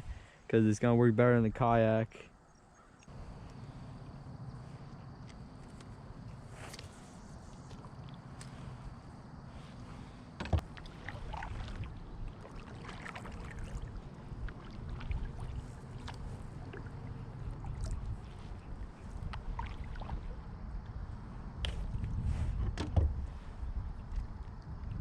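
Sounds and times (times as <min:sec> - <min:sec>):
steady low rumble: 0:03.1 - 0:25.0
paddle strokes splashing in water: 0:03.3 - 0:25.0.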